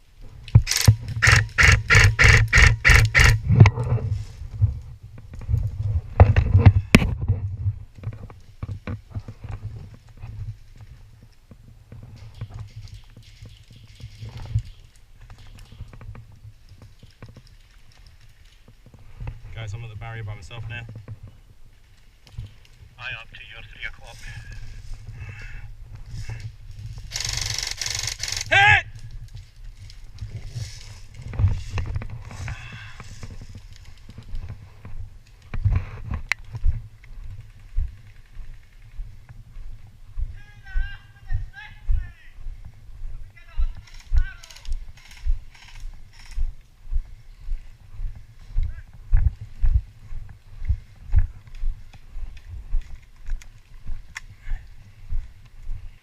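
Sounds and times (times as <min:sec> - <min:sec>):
footsteps: 0:00.2 - 0:56.0
gear rustling: 0:12.1 - 0:19.5, 0:23.8 - 0:35.6.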